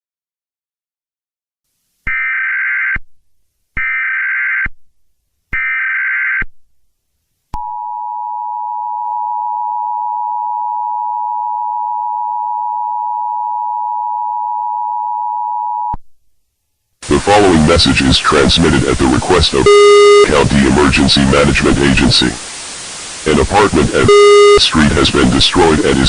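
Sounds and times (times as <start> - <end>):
warbling data bursts: 17.1 - 26.0
two-tone attention signal: 19.6 - 20.3, 24.0 - 24.7.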